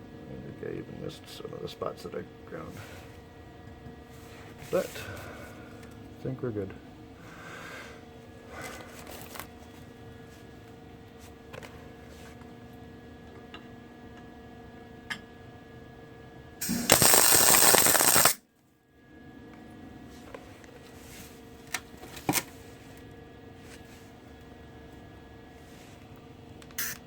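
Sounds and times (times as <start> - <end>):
sharp clicks: 16.6 - 18.4
welder crackling burst: 16.6 - 18.4, 26.8 - 27.0.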